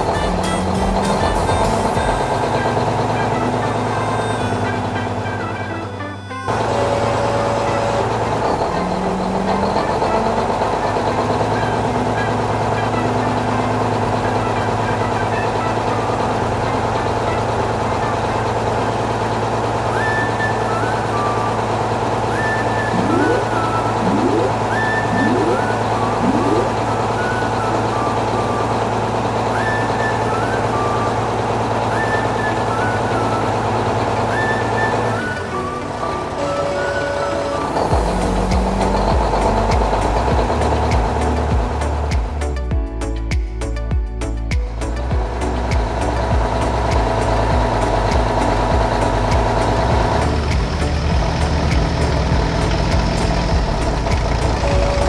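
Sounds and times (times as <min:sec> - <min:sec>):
heavy vehicle engine running: 0:00.0 - 0:55.0
short high notes: 0:22.6 - 0:27.9.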